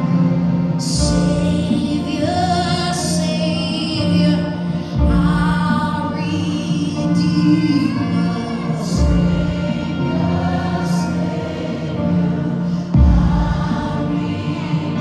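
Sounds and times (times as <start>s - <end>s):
choir singing held notes: 0.0s - 15.0s
band accompaniment: 4.2s - 15.0s.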